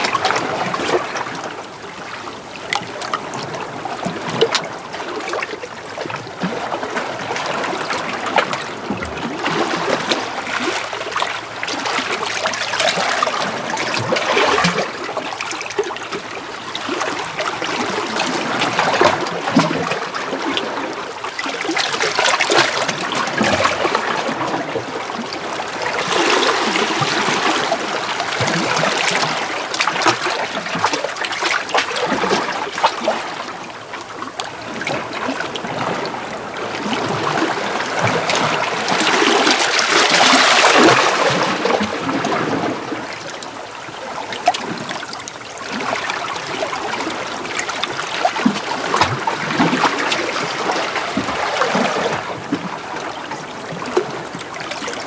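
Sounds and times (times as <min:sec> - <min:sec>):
waves splashing over rocks: 0:21.6 - 0:33.6, 0:34.4 - 0:55.0.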